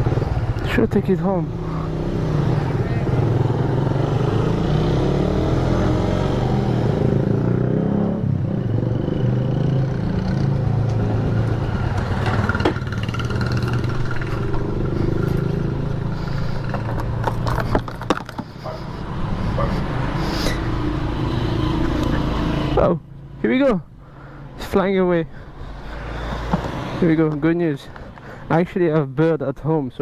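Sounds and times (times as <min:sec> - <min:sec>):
road and wind noise: 0:00.0 - 0:30.0
motorcycle engine running: 0:08.6 - 0:20.0.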